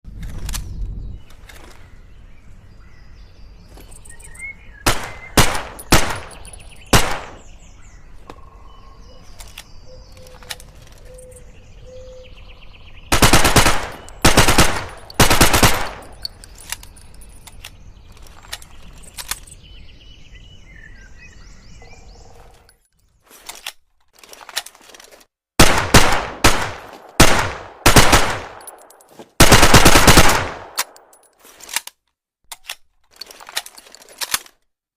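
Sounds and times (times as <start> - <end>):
submachine gun shots: 4.9 - 6.3, 6.9 - 7.4, 13.1 - 16.1, 25.6 - 28.6, 29.4 - 30.8
automatic gunfire bursts: 4.9 - 7.4, 13.1 - 16.1, 25.6 - 28.6, 29.4 - 30.8.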